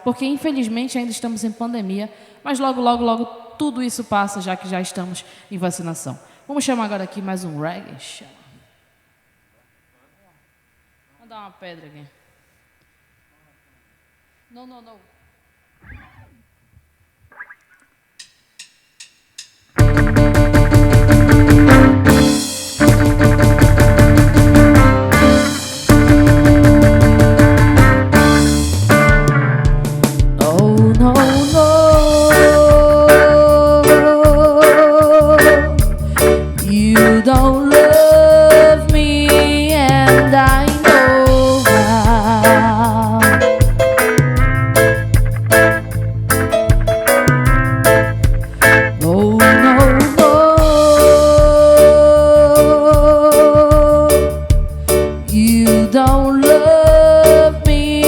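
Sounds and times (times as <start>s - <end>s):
live reggae band playing: 19.8s - 58.0s.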